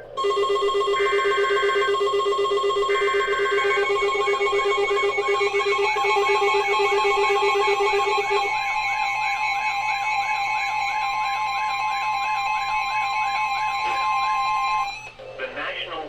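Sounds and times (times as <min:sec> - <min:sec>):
high warning tone: 0:00.2 - 0:15.2
repeating warble: 0:01.0 - 0:09.7.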